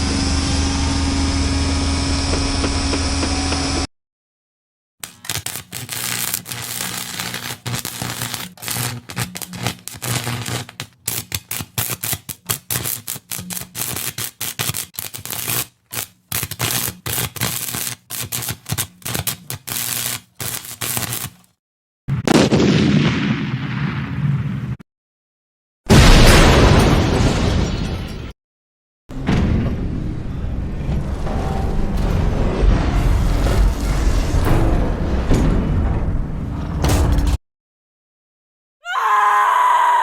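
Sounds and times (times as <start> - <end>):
low hum: 0.0 - 3.9, 29.1 - 37.4.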